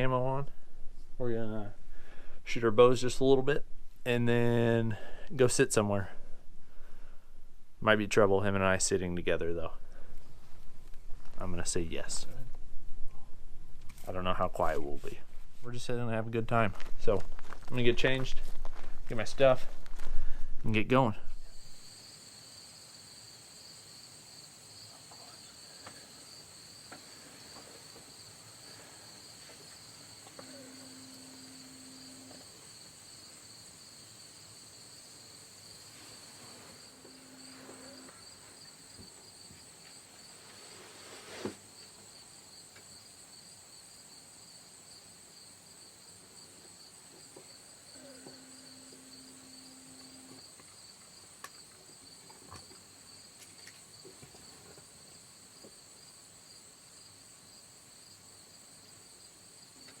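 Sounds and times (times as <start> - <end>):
insects chirring: 21.4 - 41.0, 41.6 - 60.0
faint low hum: 27.2 - 33.8, 35.8 - 39.3, 47.8 - 50.8.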